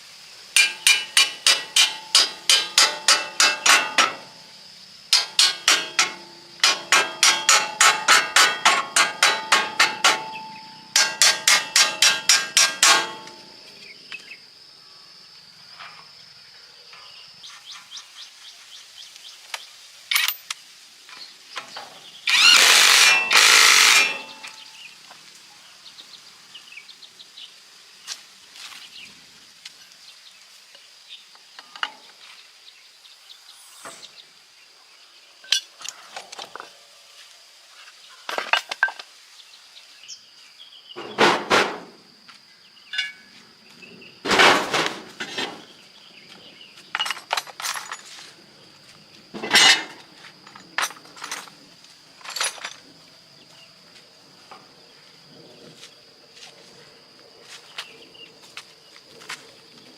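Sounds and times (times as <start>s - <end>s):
hammer striking metal: 0.6s - 4.3s, 5.1s - 13.5s, 22.9s - 24.6s.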